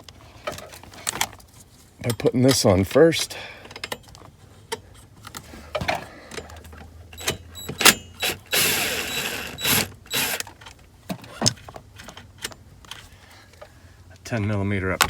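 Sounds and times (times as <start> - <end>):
socket wrench ratcheting: 7.2 - 10.6.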